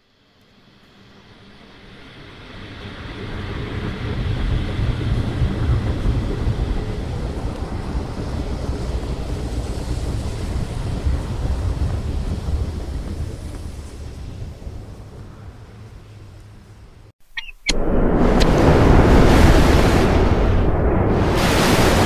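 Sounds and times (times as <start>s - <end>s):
deep rumbling noise: 3.8s - 17.1s, 17.7s - 22.0s.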